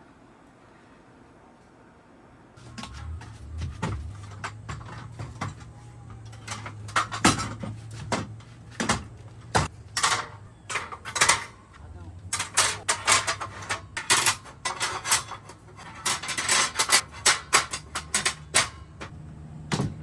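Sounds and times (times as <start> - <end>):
steady low hum: 0.0 - 20.0
clicks and knocks of containers: 2.6 - 11.6, 12.3 - 19.1.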